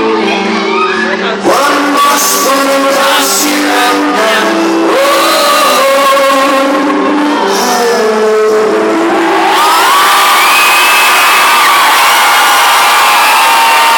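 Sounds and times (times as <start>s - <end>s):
live rock band playing: 0.0s - 9.0s.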